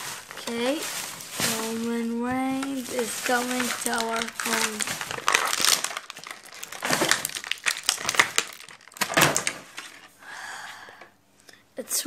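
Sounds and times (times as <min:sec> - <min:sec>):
packaging being torn open: 0:02.7 - 0:10.0.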